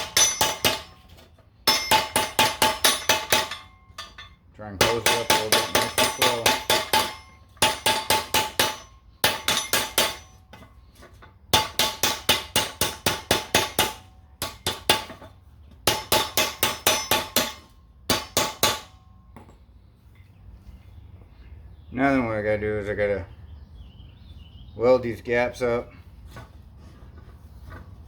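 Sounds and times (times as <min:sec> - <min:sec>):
hammer tapping metal pipe: 0:00.0 - 0:01.0, 0:01.7 - 0:10.7, 0:11.6 - 0:15.2, 0:15.9 - 0:19.6.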